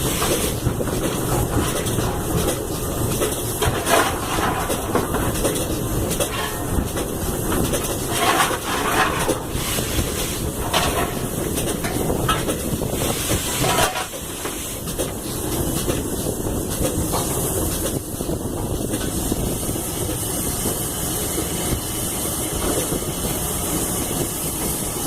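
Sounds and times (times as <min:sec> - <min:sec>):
steam locomotive rumble and rattle: 0:00.0 - 0:25.0
steam hiss: 0:12.8 - 0:25.0.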